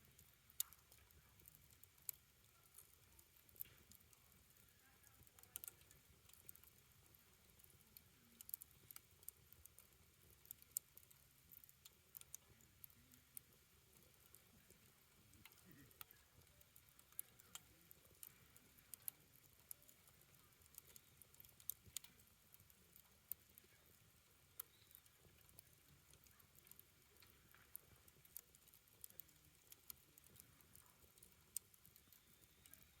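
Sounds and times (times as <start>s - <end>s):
fire crackling: 0.0s - 33.0s.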